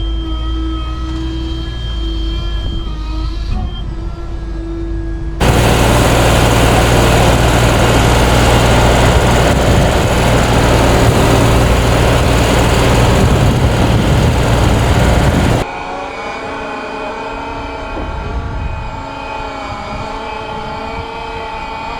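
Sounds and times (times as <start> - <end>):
diesel truck engine running: 5.4 - 15.6.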